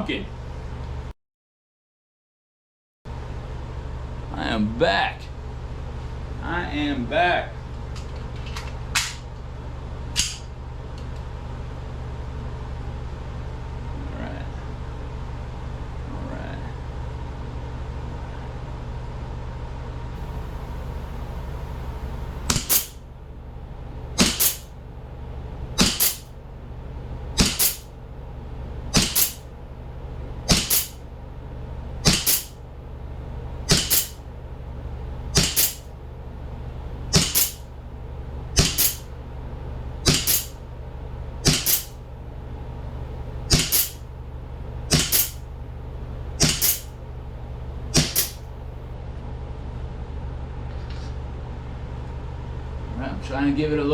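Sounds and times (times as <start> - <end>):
air pistol shots: 20.2 - 23.1, 23.9 - 24.8, 25.4 - 26.4, 27.3 - 28.0, 28.6 - 29.6, 30.3 - 31.1, 32.0 - 32.6, 33.6 - 34.3, 35.3 - 35.9, 37.0 - 37.7, 38.6 - 39.2, 40.0 - 40.6, 41.4 - 42.0, 43.4 - 44.0, 44.9 - 45.5, 46.4 - 47.0, 47.8 - 48.8
steady low hum: 20.2 - 49.0.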